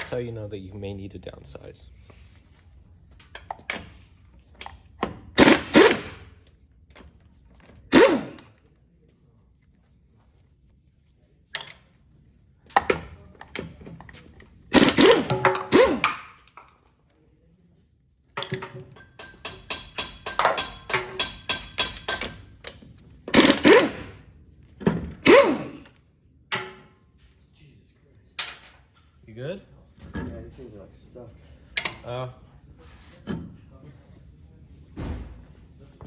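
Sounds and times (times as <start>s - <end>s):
socket wrench clattering: 18.4s - 23.8s.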